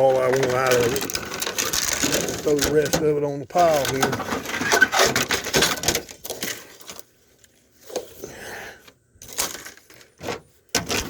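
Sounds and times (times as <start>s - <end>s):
tv parts clattering onto pile: 0.1s - 3.0s, 3.7s - 7.0s.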